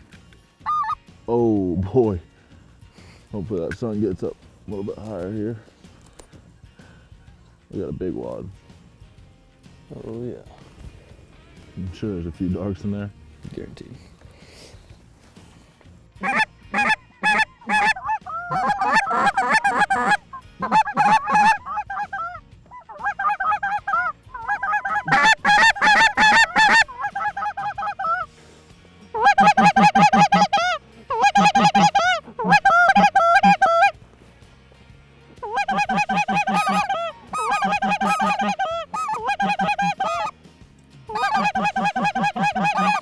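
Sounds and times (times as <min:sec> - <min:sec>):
flock of geese honking: 0:00.7 - 0:01.0, 0:16.2 - 0:28.3, 0:29.2 - 0:34.0, 0:35.4 - 0:40.3, 0:41.1 - 0:43.0.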